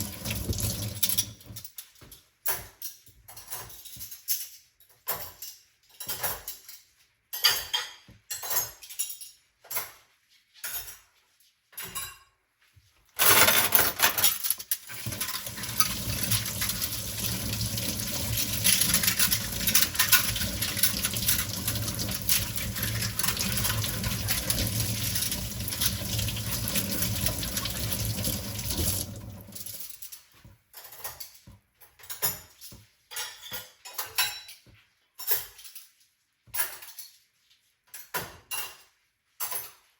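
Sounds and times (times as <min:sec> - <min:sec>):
tap water running into sink: 0:00.0 - 0:01.6, 0:14.9 - 0:29.9
dishes clinking in sink: 0:00.0 - 0:12.4, 0:13.2 - 0:39.9.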